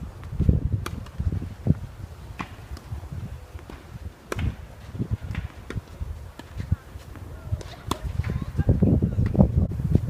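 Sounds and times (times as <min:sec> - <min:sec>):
wind buffeting microphone: 0:00.0 - 0:10.0
tennis ball hitting racket: 0:00.2 - 0:01.3, 0:02.3 - 0:08.6.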